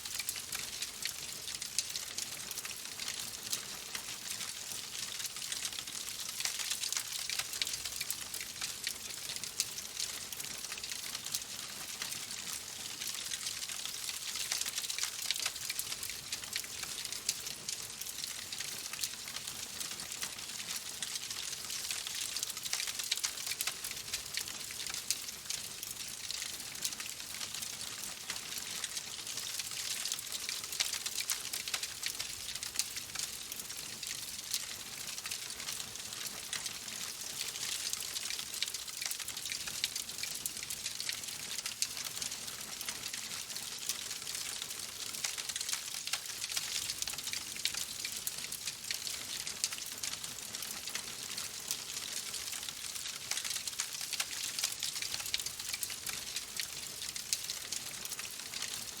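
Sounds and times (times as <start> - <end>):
wood fire crackling: 49.0 - 58.8.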